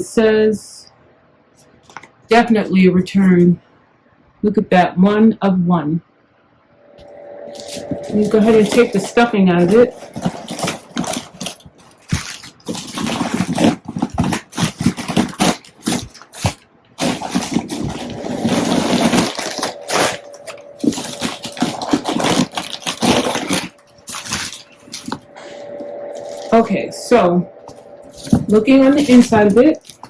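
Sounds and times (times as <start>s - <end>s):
packing stuffing crinkling: 7.6s - 25.3s, 27.7s - 30.0s.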